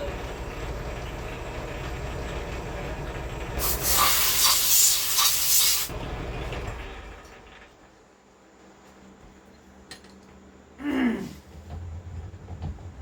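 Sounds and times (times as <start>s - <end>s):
metal lathe running: 0.0s - 7.7s
loud hiss: 3.6s - 5.9s.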